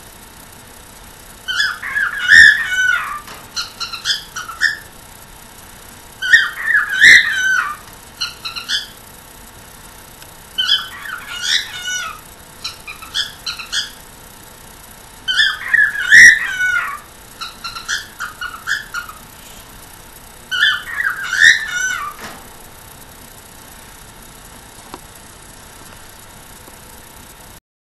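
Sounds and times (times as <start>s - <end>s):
cockatiel calling: 1.4s - 4.9s, 6.2s - 9.0s, 10.6s - 14.0s, 15.2s - 19.3s, 20.5s - 22.3s.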